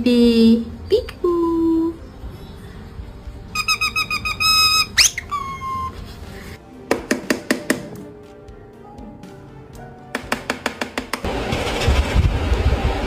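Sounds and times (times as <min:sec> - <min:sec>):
parrot mimicking electronic sounds: 0:03.5 - 0:06.0.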